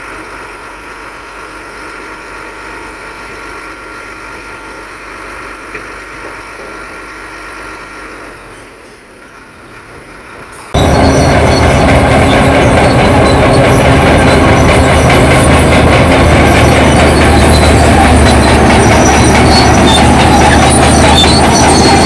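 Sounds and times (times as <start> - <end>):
heavy machinery diesel engine: 0.0 - 22.0
thin high whine: 10.8 - 22.0.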